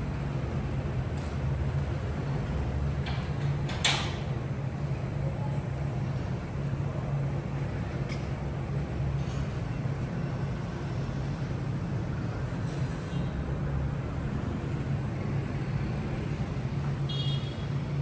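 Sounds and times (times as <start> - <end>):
road noise: 8.5 - 18.0.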